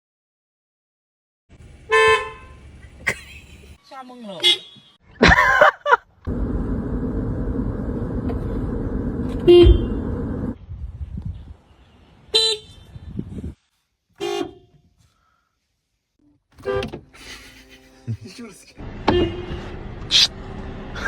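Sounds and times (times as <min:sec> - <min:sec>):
car horn blasts and toots: 0:01.9 - 0:02.6, 0:09.4 - 0:10.0, 0:12.3 - 0:12.9, 0:14.2 - 0:14.8, 0:16.6 - 0:17.1, 0:19.0 - 0:19.7.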